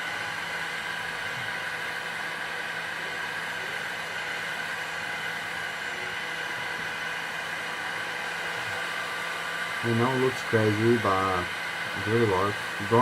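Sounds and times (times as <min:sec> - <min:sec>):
heat gun blowing hot air: 0:06.6 - 0:13.0.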